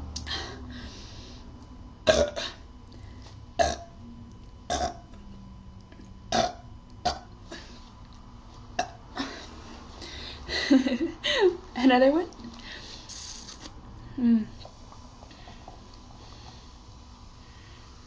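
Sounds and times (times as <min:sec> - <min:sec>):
person burping: 0:02.0 - 0:02.6, 0:03.6 - 0:03.9, 0:04.7 - 0:05.0, 0:06.3 - 0:07.3, 0:08.8 - 0:09.4.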